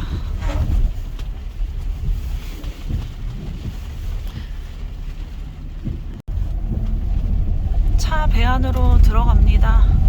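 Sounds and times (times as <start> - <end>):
low rumble of vehicle engines: 0.0 - 10.0.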